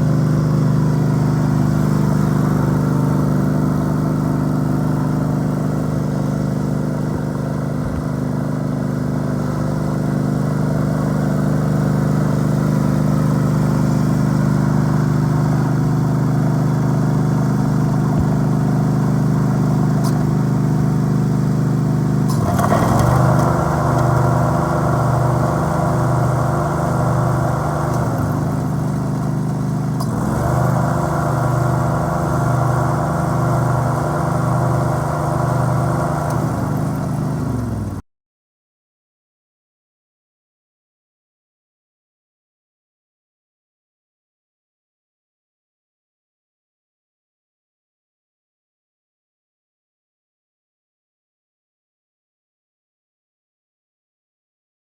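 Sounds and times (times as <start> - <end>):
riding lawn mower engine: 0.0 - 38.0.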